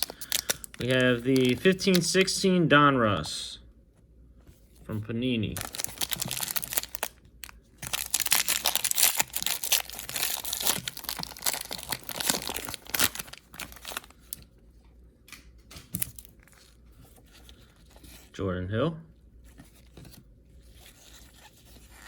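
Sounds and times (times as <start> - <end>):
wrapper tearing and crinkling: 0.0 - 2.2, 5.6 - 14.4, 15.7 - 16.8.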